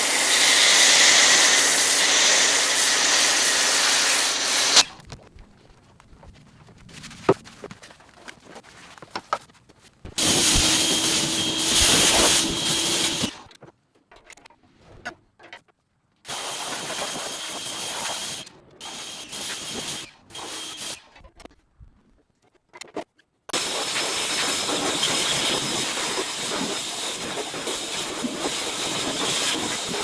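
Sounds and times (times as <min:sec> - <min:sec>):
pressure washer spraying: 0:00.0 - 0:04.9, 0:10.2 - 0:13.4, 0:16.3 - 0:21.0, 0:23.6 - 0:30.0.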